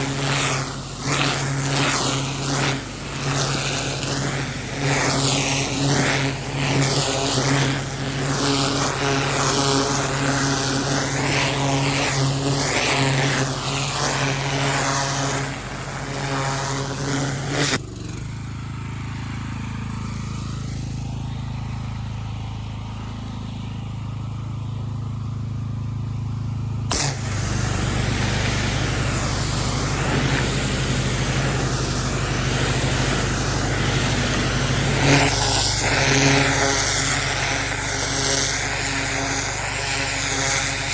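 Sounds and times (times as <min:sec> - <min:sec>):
water jet hissing on gravel: 0:00.0 - 0:17.8, 0:26.9 - 0:40.9
pressure washer engine: 0:00.0 - 0:40.9.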